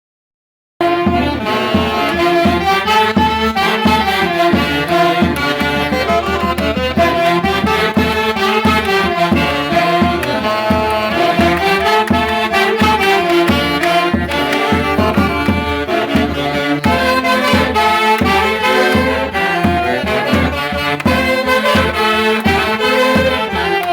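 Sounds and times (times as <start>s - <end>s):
reed and wind ensemble melody: 0.8s - 23.9s
steady low beat: 0.8s - 23.9s.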